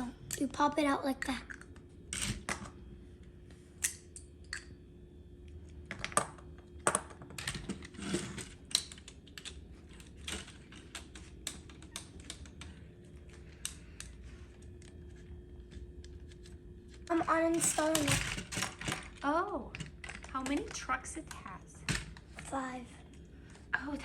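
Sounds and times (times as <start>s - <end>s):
plastic toy parts clicking: 17.0s - 20.8s.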